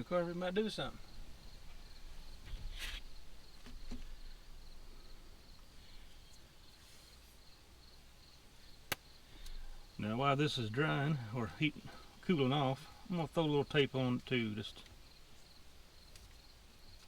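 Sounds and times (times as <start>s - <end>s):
insects chirping: 0.0s - 17.0s
brief hiss: 2.6s - 3.1s.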